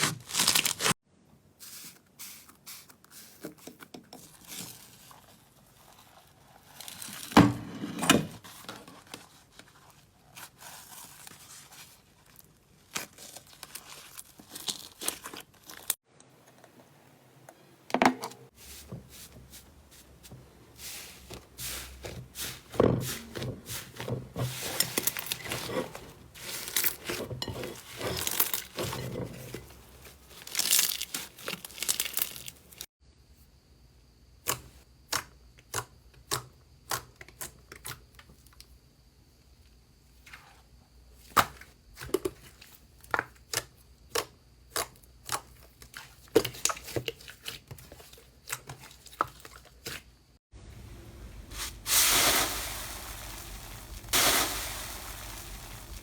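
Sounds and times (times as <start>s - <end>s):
slime crinkling and crackling: 0.0s - 1.0s, 10.3s - 16.0s, 20.2s - 32.9s, 51.5s - 56.0s.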